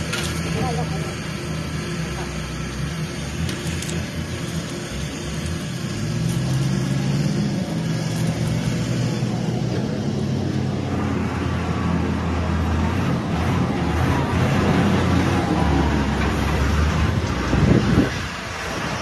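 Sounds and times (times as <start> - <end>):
stone-crushing machinery droning: 0.0 - 12.1.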